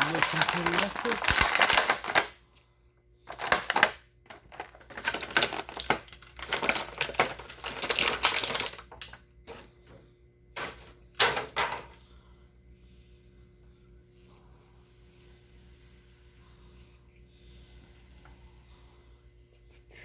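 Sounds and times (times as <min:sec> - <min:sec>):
plastic parts clicking and rattling: 0:00.0 - 0:02.4, 0:03.3 - 0:09.6.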